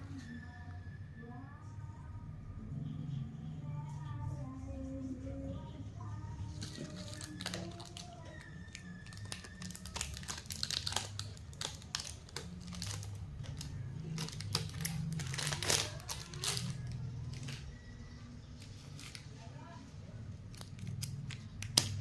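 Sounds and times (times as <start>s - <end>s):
plastic wrapper crinkling: 6.5s - 17.7s, 18.5s - 19.4s, 20.4s - 22.0s.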